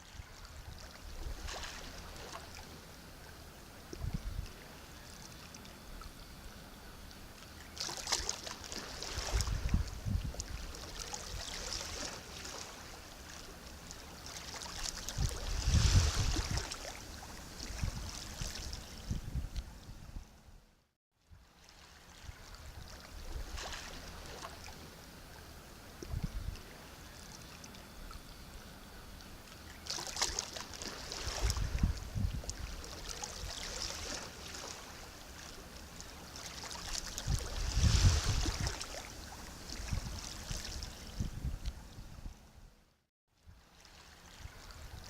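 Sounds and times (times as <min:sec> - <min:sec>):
sea waves breaking on shore: 0:00.0 - 0:03.1, 0:07.6 - 0:19.0, 0:21.4 - 0:25.0, 0:29.7 - 0:41.2.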